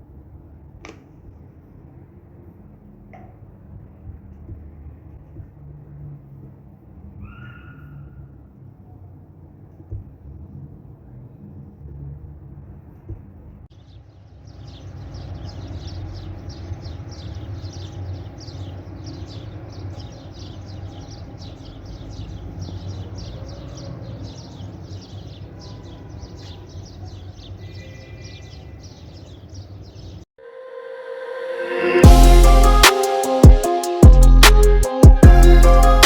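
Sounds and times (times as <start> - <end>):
steady low rumble: 30.8 - 32.8.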